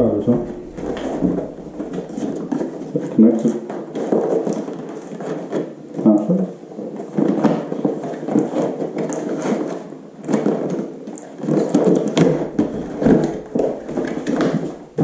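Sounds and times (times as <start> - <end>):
packaging rustling: 0.4 - 5.6, 11.5 - 15.0.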